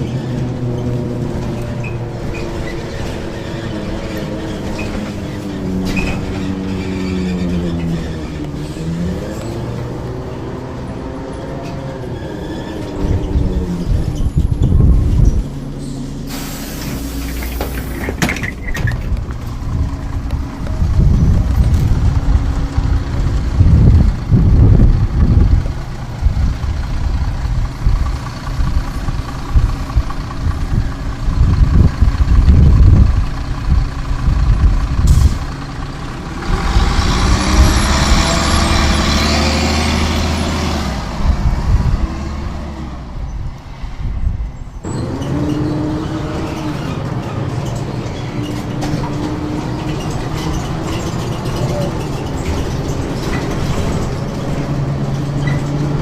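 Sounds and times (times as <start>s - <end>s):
bus diesel engine rumbling: 0.0s - 56.0s
loud hissing rush: 15.8s - 18.0s.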